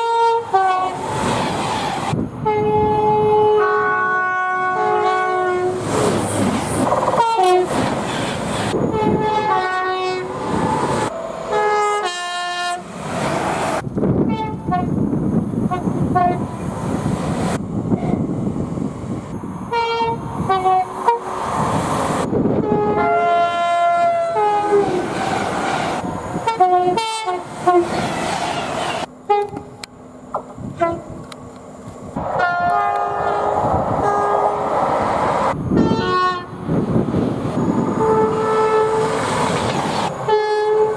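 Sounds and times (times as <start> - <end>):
train horn blasts: 0.0 - 1.0, 2.4 - 5.9, 7.0 - 7.8, 8.8 - 10.3, 11.4 - 12.9, 14.2 - 15.0, 15.7 - 16.5, 19.7 - 21.4, 22.6 - 25.0, 26.4 - 27.9, 28.9 - 29.9, 30.7 - 31.2, 32.2 - 34.7, 35.8 - 36.6, 37.9 - 39.2, 40.2 - 40.9
passing trains: 0.0 - 40.9.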